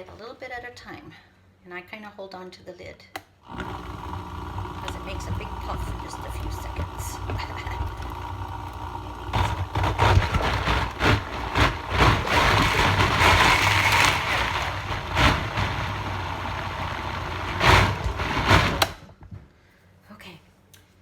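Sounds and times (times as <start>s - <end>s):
blender motor whirring: 3.4s - 19.1s.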